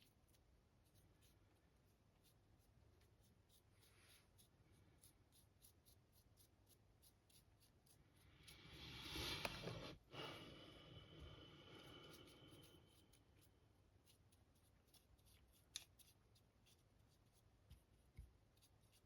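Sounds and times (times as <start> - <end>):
scratchy rubbing on microphone: 8.7 - 10.1.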